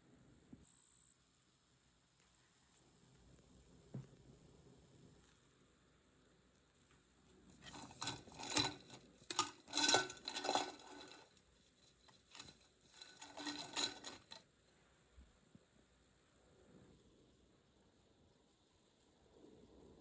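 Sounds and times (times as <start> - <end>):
small hard objects clinking: 7.6 - 14.4.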